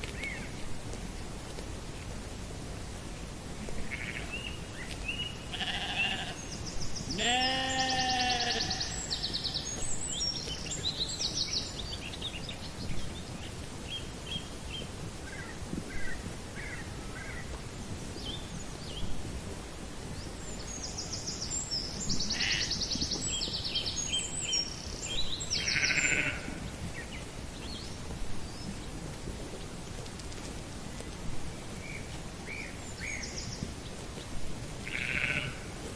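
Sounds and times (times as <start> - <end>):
outdoor background noise: 0.0 - 35.9
sheep bleating: 3.8 - 4.4, 5.5 - 6.4, 7.1 - 9.4, 22.3 - 22.7, 25.6 - 26.6, 34.8 - 35.7.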